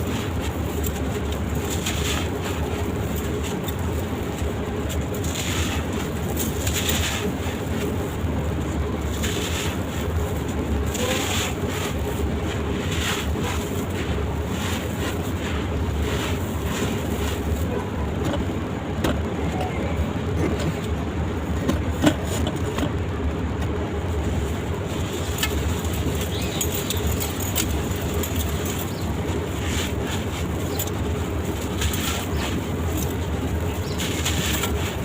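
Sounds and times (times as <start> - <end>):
sand-cement crumbling crackles: 0.0 - 18.8, 23.7 - 35.0
steady low rumble: 0.0 - 35.0.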